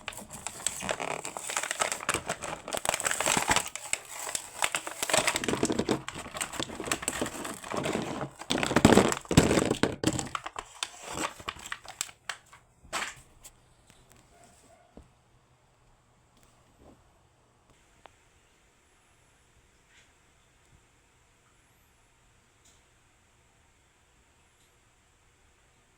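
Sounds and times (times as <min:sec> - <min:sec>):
packaging crinkling and tearing: 0:00.0 - 0:13.2.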